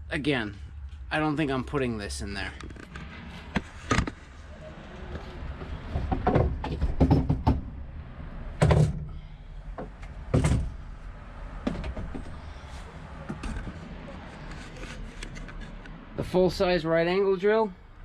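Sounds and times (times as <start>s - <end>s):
heavy clunks: 5.1s - 7.8s, 8.6s - 11.0s
plastic drawer clattering and knocking: 6.0s - 7.6s.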